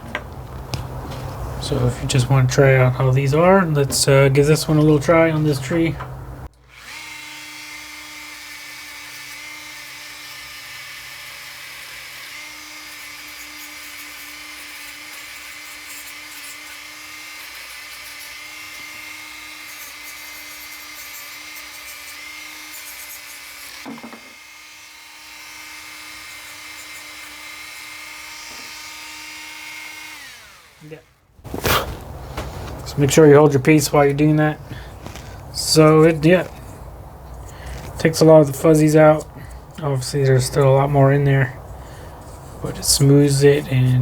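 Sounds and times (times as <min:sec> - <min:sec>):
rotary tool whining on wood: 0:06.0 - 0:31.2.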